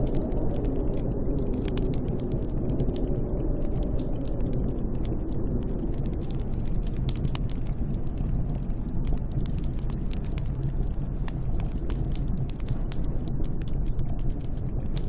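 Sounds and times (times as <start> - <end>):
wind blowing: 0.0 - 8.3
sharp crackles and ticks: 0.0 - 15.0.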